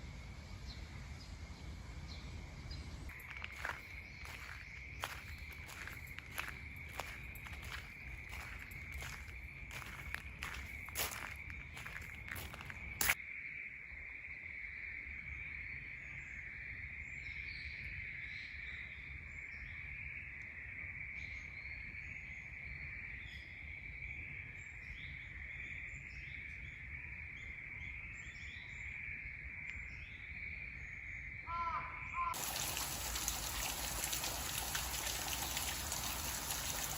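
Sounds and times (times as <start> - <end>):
small birds chirping: 2.7 - 13.2, 32.3 - 36.9
insects droning: 3.1 - 16.9, 30.4 - 36.9.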